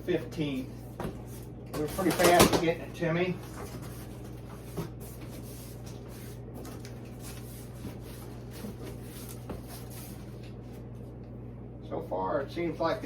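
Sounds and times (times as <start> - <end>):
cardboard scraping and rustling: 3.4 - 10.8.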